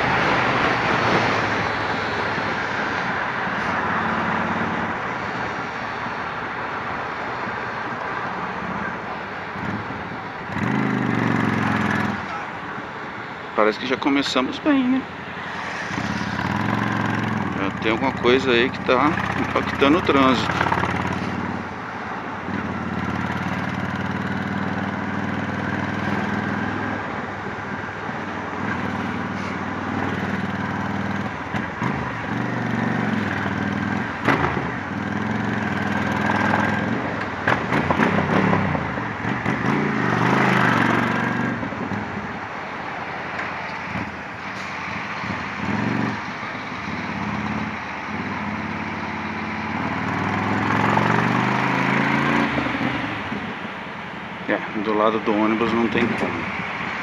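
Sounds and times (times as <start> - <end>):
rushing noise: 11.1 - 22.4
motorcycle engine running: 15.9 - 21.6.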